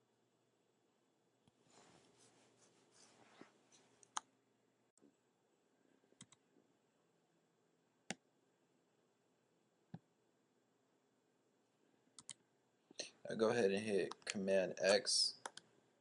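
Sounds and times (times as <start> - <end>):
soft rustle: 1.6 - 4.0
computer mouse clicks: 6.2 - 6.4, 12.2 - 12.4.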